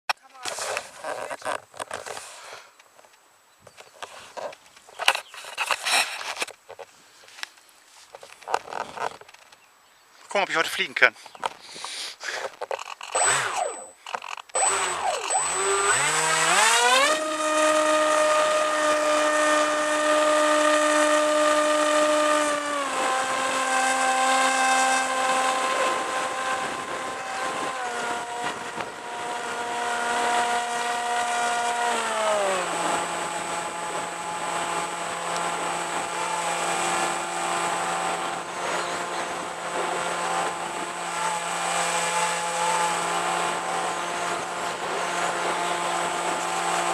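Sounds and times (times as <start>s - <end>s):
electric motor and propeller whine: 12.6s - 46.9s.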